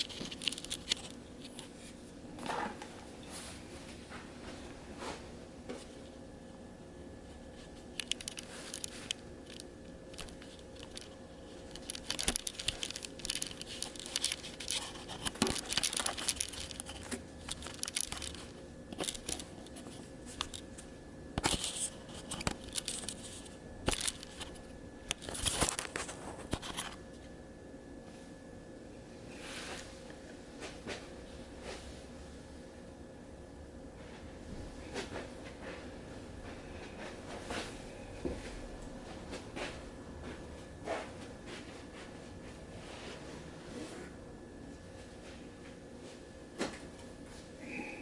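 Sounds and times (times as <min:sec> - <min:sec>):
rustling and crinkling handling noise: 0:00.0 - 0:06.2, 0:07.2 - 0:27.4
faint steady hum: 0:00.0 - 0:48.0.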